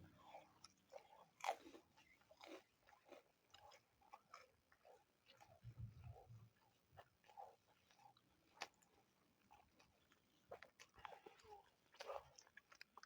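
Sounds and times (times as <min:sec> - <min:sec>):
person chewing food: 0:00.0 - 0:13.0.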